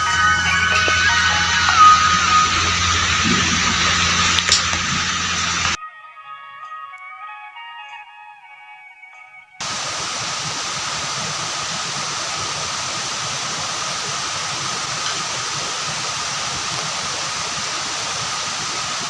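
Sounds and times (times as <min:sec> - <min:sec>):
waterfall rushing: 0:00.0 - 0:05.8, 0:09.6 - 0:19.0
background music: 0:00.0 - 0:09.6.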